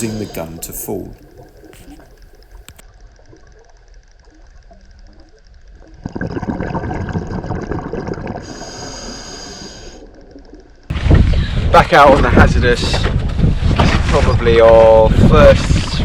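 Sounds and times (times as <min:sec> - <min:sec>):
faint underwater hiss: 0:00.0 - 0:02.8, 0:08.4 - 0:10.2
exhaled breath bubbling underwater: 0:06.0 - 0:10.3.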